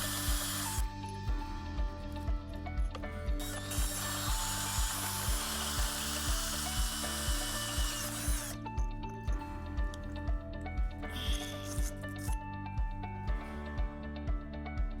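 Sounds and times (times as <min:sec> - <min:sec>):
background music with steady beat: 0:00.0 - 0:15.0.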